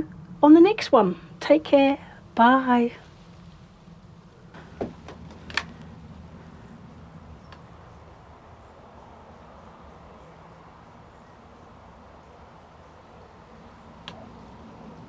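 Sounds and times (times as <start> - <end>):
faint background hum: 0.0 - 15.0.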